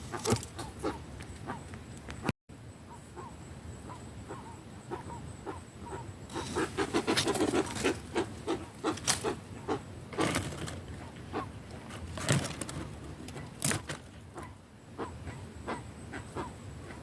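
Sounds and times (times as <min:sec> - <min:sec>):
bird calling: 0:00.0 - 0:10.3, 0:14.3 - 0:17.0.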